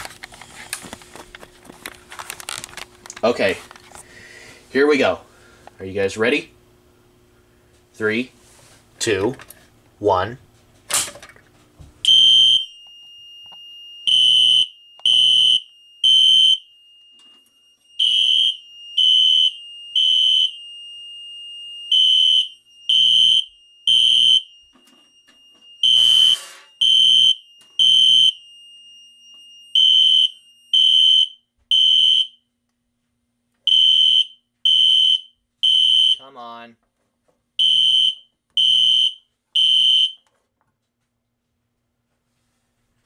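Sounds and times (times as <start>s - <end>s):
fire alarm horn beeping: 12.0s - 32.4s, 33.7s - 36.4s, 37.6s - 40.3s
brief scraping noise: 26.0s - 26.8s.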